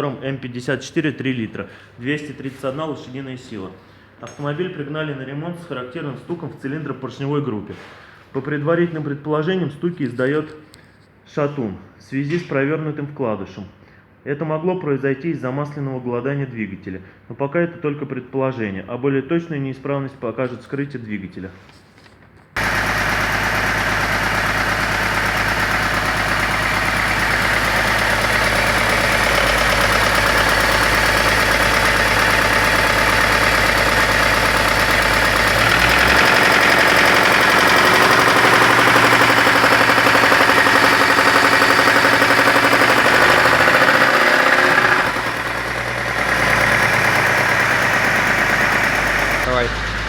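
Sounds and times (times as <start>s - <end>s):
car engine knocking: 22.6s - 50.0s.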